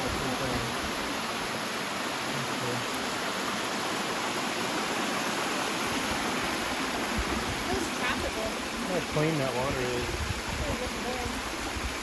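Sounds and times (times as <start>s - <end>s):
stream water rushing: 0.0s - 12.0s.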